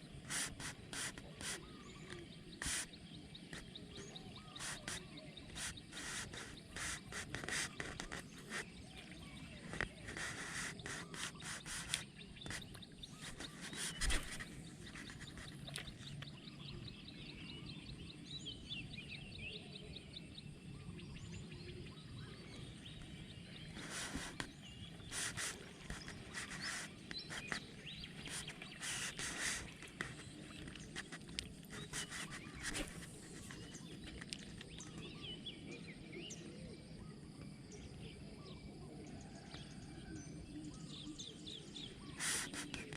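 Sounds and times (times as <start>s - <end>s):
birds chirping: 0.0s - 42.9s
short rustles and clicks: 9.7s - 16.2s.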